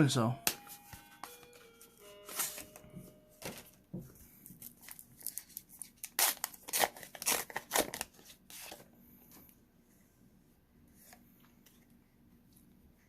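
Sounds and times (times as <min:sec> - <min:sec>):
plastic wrapper crinkling and ripping: 0:04.6 - 0:08.8.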